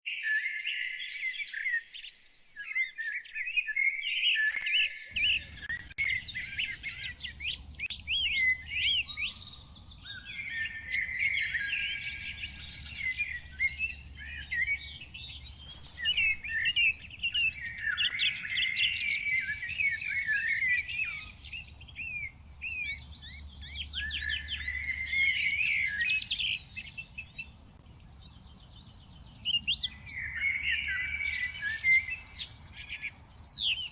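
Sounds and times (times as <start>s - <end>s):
songbirds singing and chirping: 0.1s - 33.9s.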